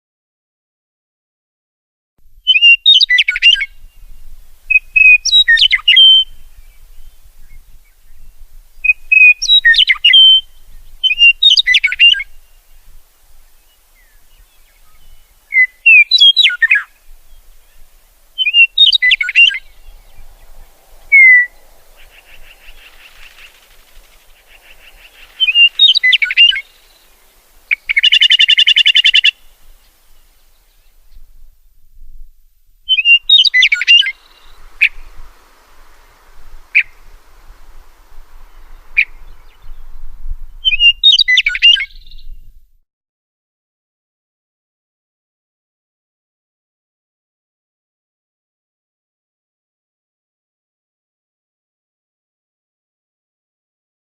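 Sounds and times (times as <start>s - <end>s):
songbird singing whistled phrases: 2.4s - 12.8s, 13.7s - 17.8s, 18.4s - 31.2s, 32.9s - 37.1s, 37.9s - 42.5s.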